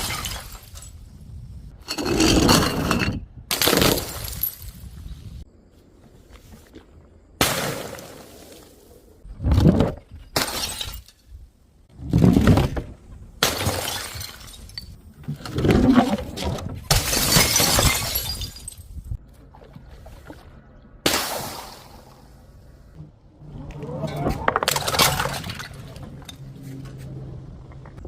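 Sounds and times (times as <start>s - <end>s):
glass bottles shattering: 0.0s - 1.0s, 10.4s - 11.3s, 13.4s - 15.0s, 16.9s - 19.0s, 24.6s - 26.4s.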